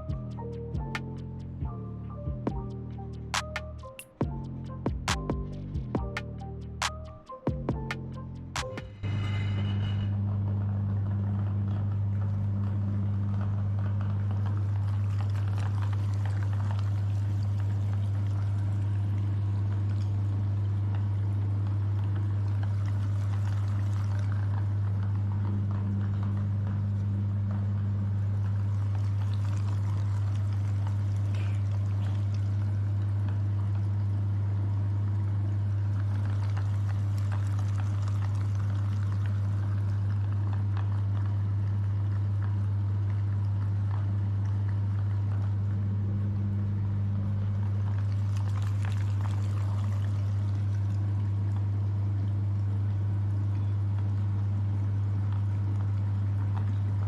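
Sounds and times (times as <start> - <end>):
electric meat grinder humming: 10.7 - 42.6
wet crackling: 12.8 - 34.2, 34.8 - 45.7, 47.4 - 53.0.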